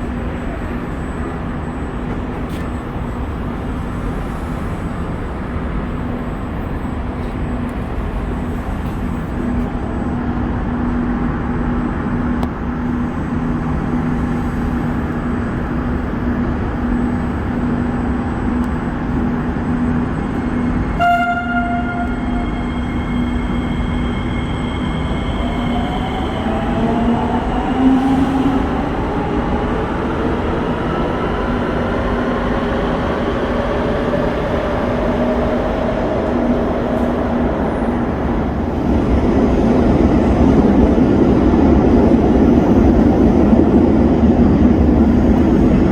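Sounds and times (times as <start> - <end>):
train hum and rumble: 0.0 - 45.9
train horn toot: 20.9 - 24.0.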